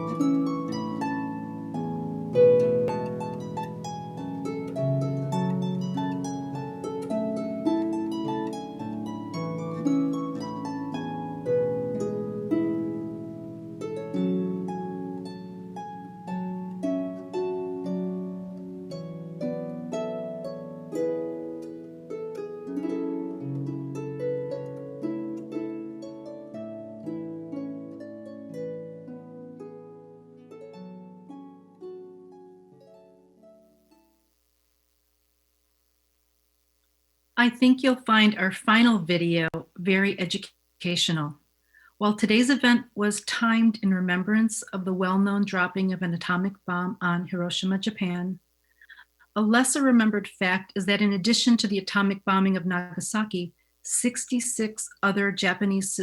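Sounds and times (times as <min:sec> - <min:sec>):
plucked string instrument: 0:00.0 - 0:34.1.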